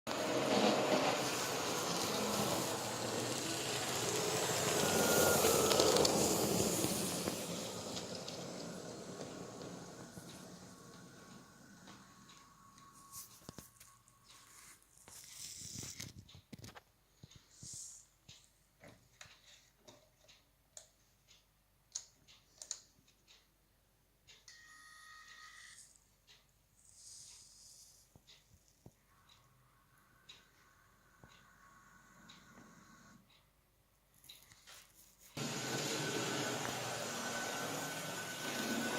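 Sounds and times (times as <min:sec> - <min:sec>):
model locomotive motor hum: 0:00.1 - 0:12.9, 0:35.4 - 0:38.9.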